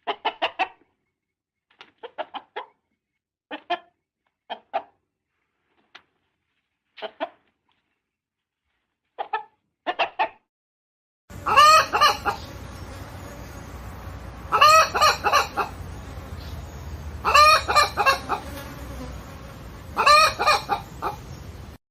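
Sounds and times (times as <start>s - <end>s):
hens clucking: 0.0s - 0.9s, 1.9s - 2.8s, 3.5s - 3.9s, 4.5s - 5.0s, 9.2s - 10.4s, 11.3s - 13.4s, 14.1s - 18.6s, 19.8s - 21.5s.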